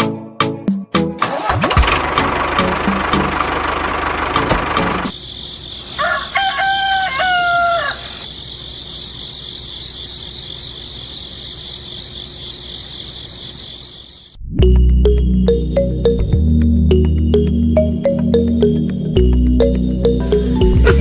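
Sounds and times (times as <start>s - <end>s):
engine running: 1.2s - 5.9s
rooster crowing: 5.9s - 8.3s.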